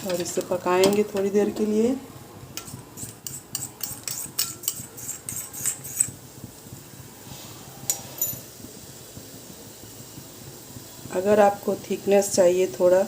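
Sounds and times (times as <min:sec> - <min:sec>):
metal spoon scraping a pan: 0:00.0 - 0:01.3, 0:02.6 - 0:06.2, 0:07.8 - 0:08.5.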